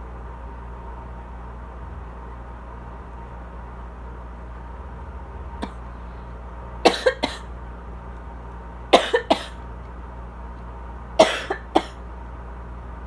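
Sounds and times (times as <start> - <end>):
air conditioner hum: 0.0 - 13.0
person coughing: 6.9 - 7.5, 9.0 - 9.6, 11.2 - 12.0.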